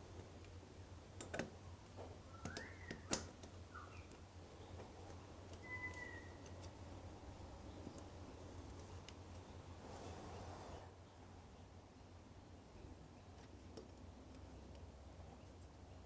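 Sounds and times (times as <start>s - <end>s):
small metallic clicks and taps: 1.2s - 4.2s.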